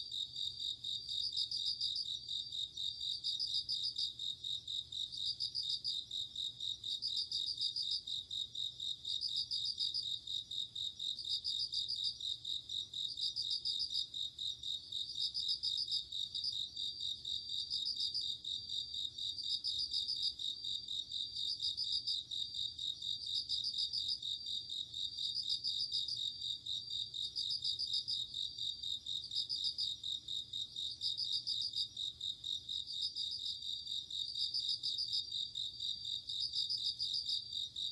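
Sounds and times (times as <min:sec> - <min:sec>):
continuous high cricket trill: 0:00.0 - 0:37.9
pulsed cricket chirp: 0:00.0 - 0:37.9.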